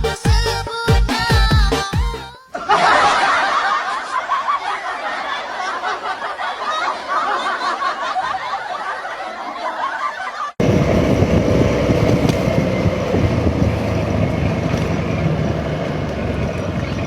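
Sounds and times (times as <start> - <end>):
people snickering and chuckling: 2.5 - 10.6
vehicle engine rumble: 10.6 - 17.0.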